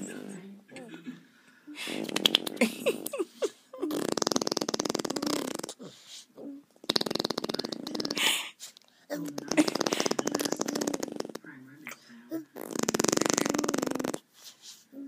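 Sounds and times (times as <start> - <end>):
toddler blowing raspberries: 3.8 - 5.8.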